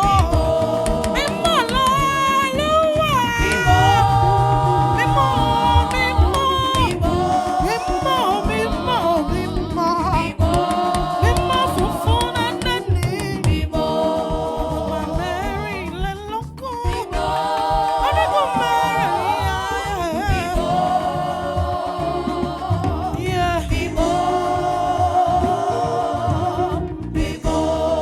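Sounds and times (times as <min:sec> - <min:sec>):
drum-backed instrumental music: 0:00.0 - 0:27.9
sustained sung notes: 0:03.5 - 0:09.6.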